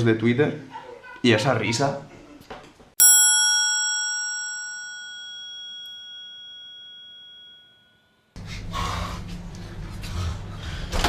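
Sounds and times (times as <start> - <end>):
bell-like ringing tone: 3.0 - 8.4.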